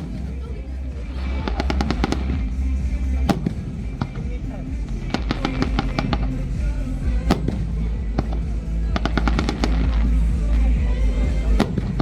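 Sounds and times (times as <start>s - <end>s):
fireworks bangs and crackles: 0.0s - 6.4s, 7.1s - 10.4s, 11.5s - 12.0s
deep rumble: 0.0s - 12.0s.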